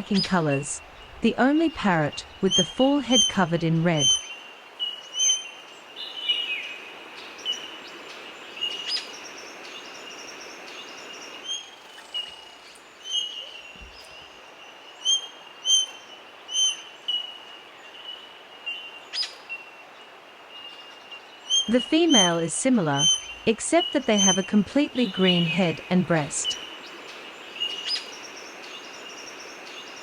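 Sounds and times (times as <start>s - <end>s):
faint high-pitched background tone: 0.0s - 4.4s
parrot high piping calls: 23.0s - 26.6s.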